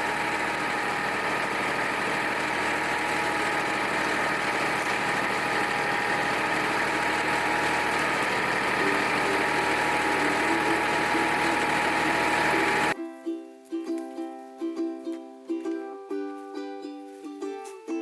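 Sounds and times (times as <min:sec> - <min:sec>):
tractor diesel engine idling: 0:00.0 - 0:13.0.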